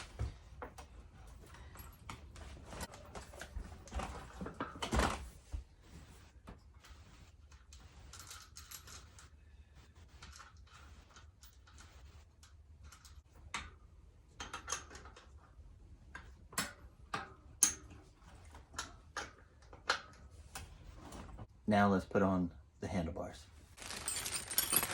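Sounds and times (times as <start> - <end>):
soft rustling: 23.8 - 24.9
tools clicking and clinking: 23.8 - 24.9.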